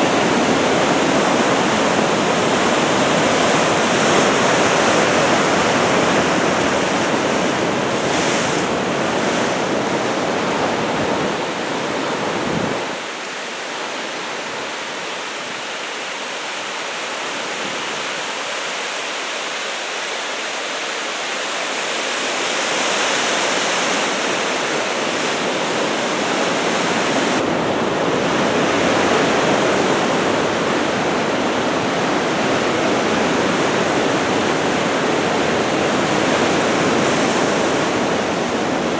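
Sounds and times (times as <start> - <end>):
wind on microphone: 0.0 - 13.1, 23.2 - 38.9
ocean surf breaking: 0.0 - 38.9.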